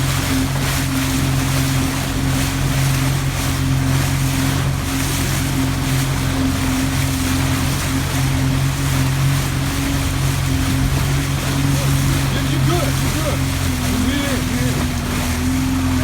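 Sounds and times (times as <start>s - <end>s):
boat motor running: 0.0s - 16.0s
water rushing past: 0.0s - 16.0s
wind buffeting microphone: 9.9s - 16.0s.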